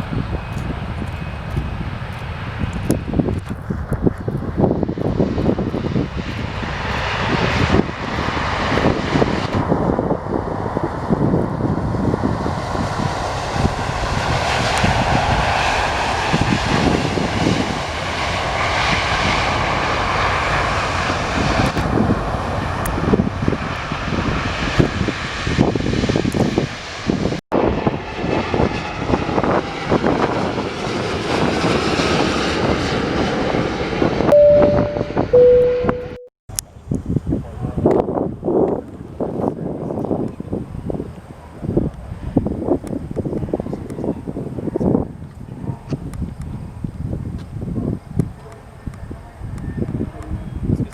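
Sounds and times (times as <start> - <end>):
jet engines roaring: 0.0 - 35.6
wind on microphone: 0.0 - 36.0, 36.7 - 50.9.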